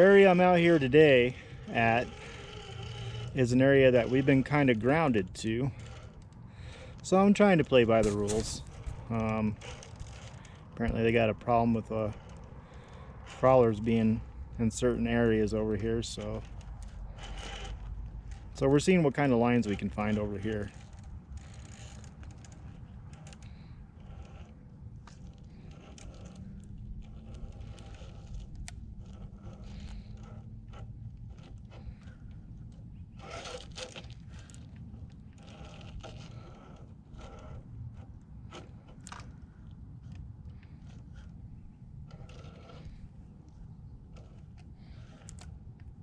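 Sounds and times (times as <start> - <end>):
tyres crunching over rock: 0.0 - 13.8
steady low rumble: 0.0 - 33.2
faint electric motor hum: 0.0 - 46.0.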